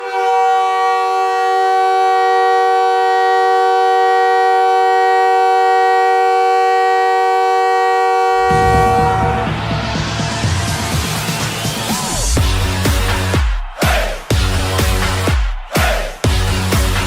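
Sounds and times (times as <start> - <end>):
hockey goal horn blast: 0.0 - 10.0.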